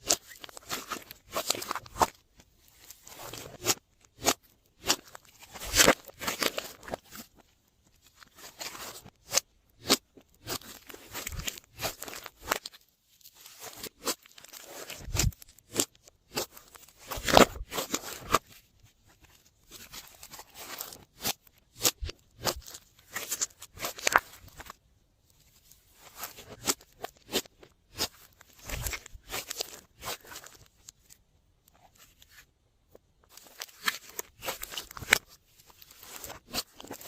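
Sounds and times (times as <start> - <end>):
slime squishing: 33.3 - 37.0.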